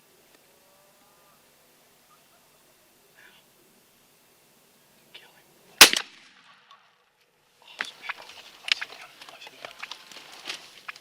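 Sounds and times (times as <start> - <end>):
loud gunshot with echo: 5.8 - 6.5
rustling and clattering: 7.8 - 11.0.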